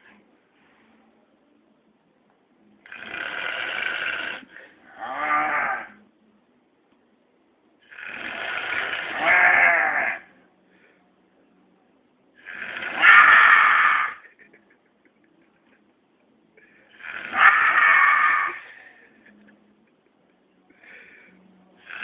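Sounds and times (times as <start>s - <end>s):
man snoring loudly: 2.8s - 5.9s, 7.9s - 10.2s, 12.4s - 14.2s, 16.9s - 18.6s.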